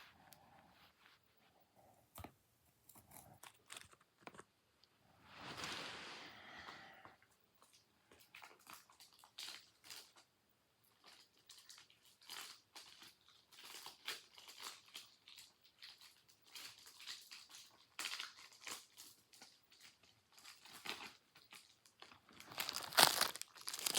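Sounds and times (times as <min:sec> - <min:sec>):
plastic rustle: 0:11.0 - 0:23.9
plastic wrap crinkling: 0:11.0 - 0:23.9.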